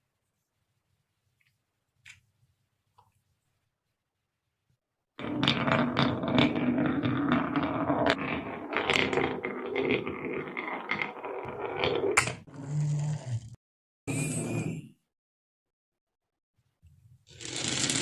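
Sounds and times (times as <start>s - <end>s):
marbles rolling and clattering: 5.2s - 12.8s, 17.3s - 18.0s.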